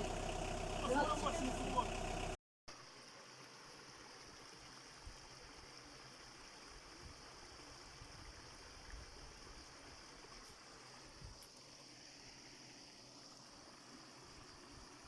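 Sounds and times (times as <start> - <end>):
flowing stream: 0.0 - 15.0.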